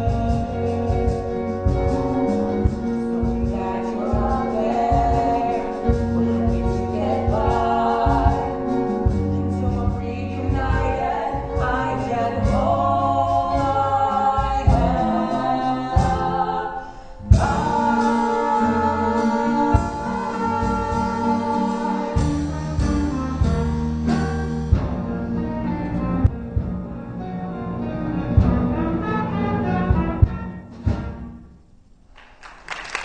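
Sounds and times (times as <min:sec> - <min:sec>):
instrumental accompaniment with beat: 0:00.0 - 0:16.6, 0:17.3 - 0:31.8
group singing musical number: 0:00.0 - 0:24.2.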